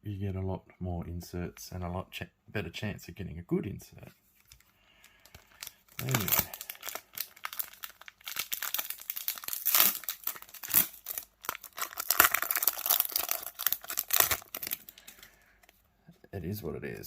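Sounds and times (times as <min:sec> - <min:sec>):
card pack wrapper crinkling and tearing: 0:04.4 - 0:15.8.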